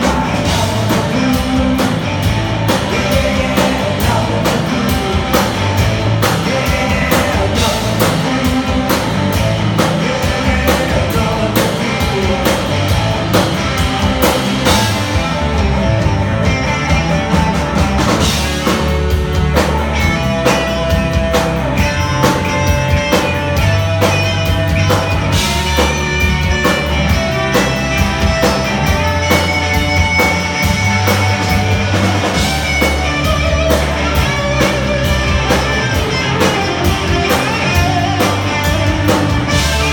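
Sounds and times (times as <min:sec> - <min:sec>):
person singing: 0:00.0 - 0:13.3
rock band playing live: 0:00.0 - 0:39.9.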